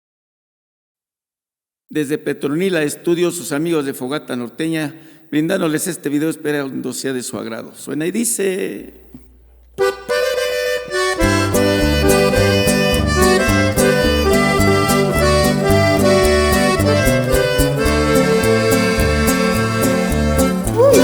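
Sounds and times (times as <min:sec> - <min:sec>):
accordion melody: 0:09.8 - 0:21.0
bass line: 0:09.8 - 0:21.0
steady beat: 0:09.8 - 0:21.0.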